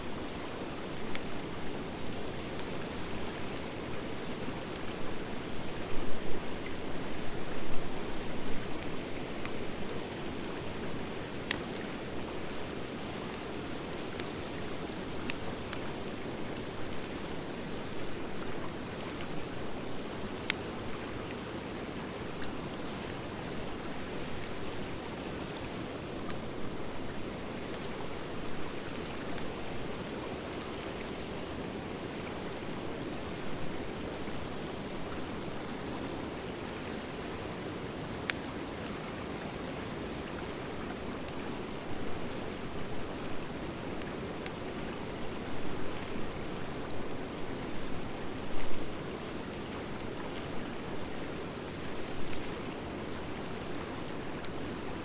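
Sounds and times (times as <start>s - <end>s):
campfire burning with crackles: 0.0s - 55.0s.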